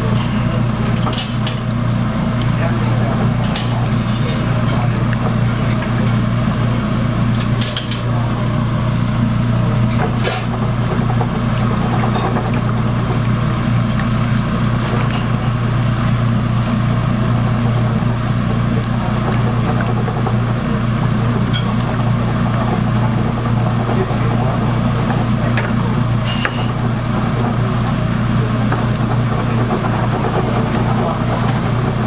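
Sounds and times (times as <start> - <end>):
low mechanical hum: 0.0 - 32.0
utensils clicking on cookware: 23.8 - 32.0.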